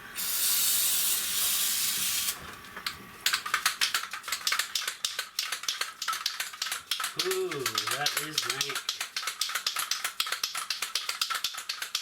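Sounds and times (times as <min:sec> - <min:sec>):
aerosol can spraying: 0:00.2 - 0:02.4.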